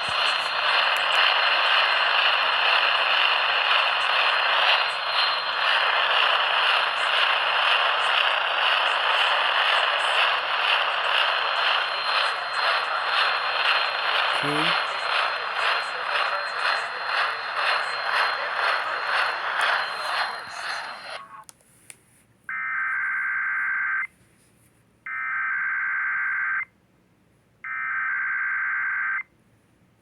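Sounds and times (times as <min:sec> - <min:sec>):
radio static hiss: 0:00.0 - 0:08.2, 0:09.0 - 0:21.4
high steady whistle: 0:00.0 - 0:21.3.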